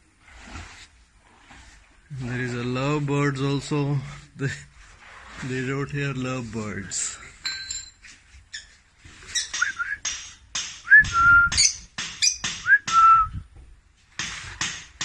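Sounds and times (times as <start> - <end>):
shrill bird chirps and squawks: 8.5 - 9.7, 11.5 - 12.5
whistled bird notes: 9.3 - 10.1, 10.9 - 13.4.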